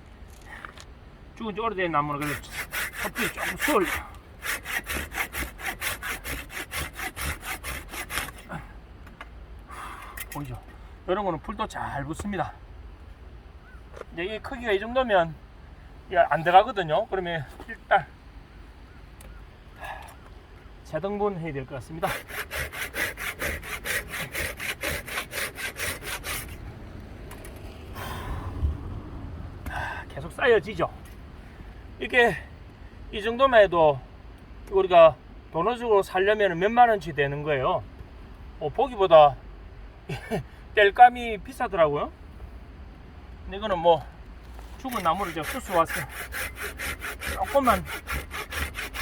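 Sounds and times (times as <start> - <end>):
hand saw cutting log: 2.2 - 8.6, 22.0 - 26.7, 44.6 - 49.0.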